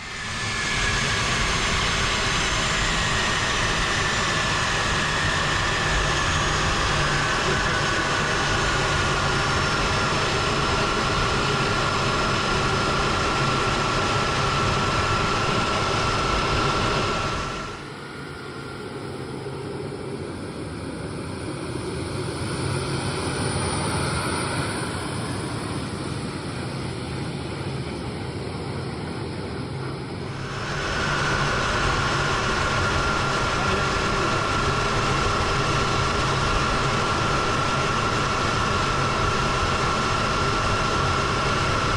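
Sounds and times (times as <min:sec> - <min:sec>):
jet engines whining: 0:00.0 - 0:41.9.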